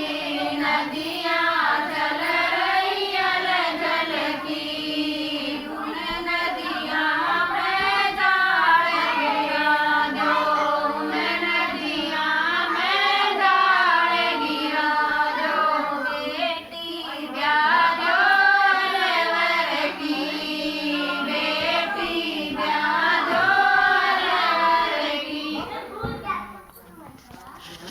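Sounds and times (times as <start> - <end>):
group singing folk song: 0.0 - 25.9.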